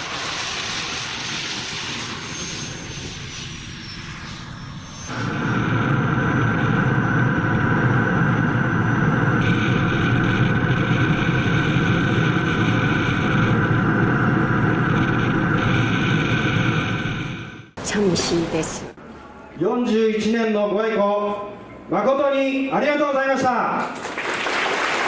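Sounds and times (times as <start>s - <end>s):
engine whine falling in pitch: 0.0s - 17.8s
steady engine drone: 0.0s - 17.8s.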